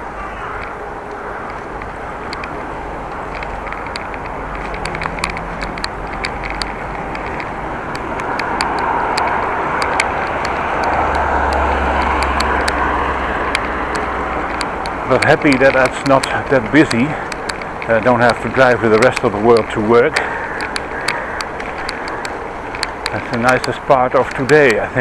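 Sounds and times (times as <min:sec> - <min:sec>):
bicycle tyres rolling: 0:00.0 - 0:25.0
small clicks and rattles: 0:00.0 - 0:25.0.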